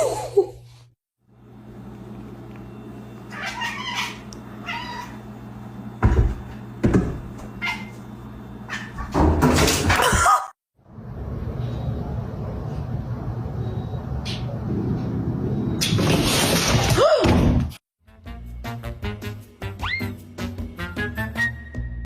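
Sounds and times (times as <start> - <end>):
cat meowing: 3.3 - 5.2
steady low hum: 10.8 - 15.8.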